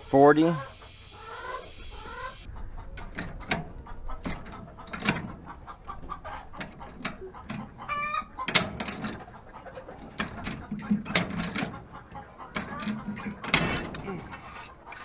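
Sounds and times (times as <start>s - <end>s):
chickens clucking: 0.0s - 15.0s
chicken squawk: 0.2s - 2.7s, 7.8s - 8.5s.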